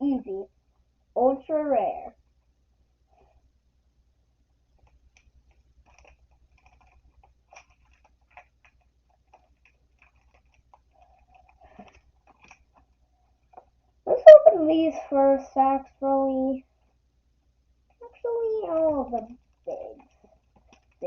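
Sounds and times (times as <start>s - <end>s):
trading cards being handled: 4.7s - 13.8s, 18.7s - 21.0s.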